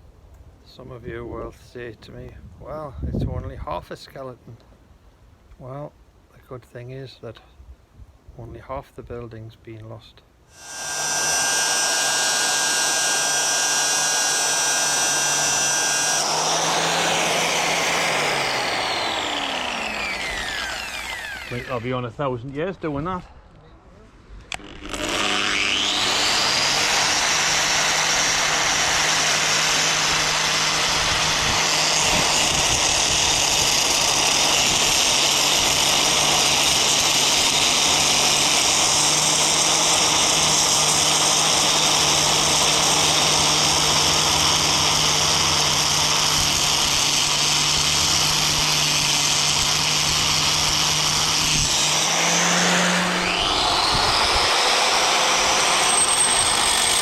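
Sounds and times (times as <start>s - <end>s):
angle grinder cutting metal: 10.5s - 22.0s, 24.5s - 57.0s.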